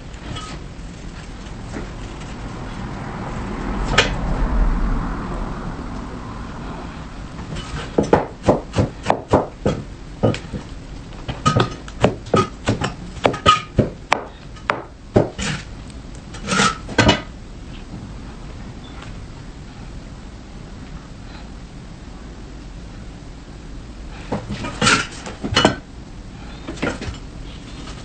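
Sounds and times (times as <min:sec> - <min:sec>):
knife chopping on cutting board: 0:08.0 - 0:09.8.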